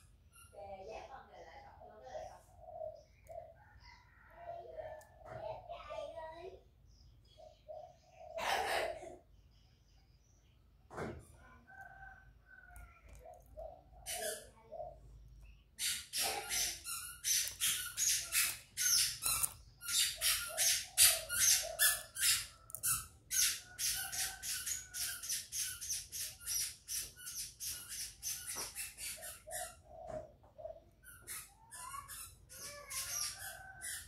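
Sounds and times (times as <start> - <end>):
small bird chirping: 0.0 - 34.0
dove cooing: 1.6 - 5.8, 7.4 - 9.2, 11.7 - 15.2, 16.1 - 16.8, 20.2 - 22.4, 29.0 - 31.3, 33.5 - 33.8.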